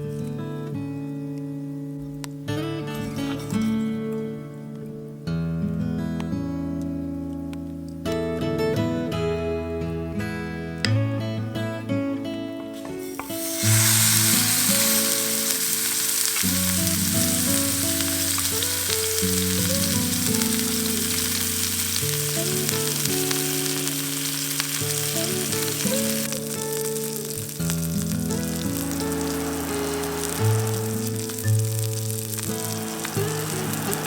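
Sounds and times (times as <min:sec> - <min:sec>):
meat sizzling loudly: 0:12.8 - 0:34.0.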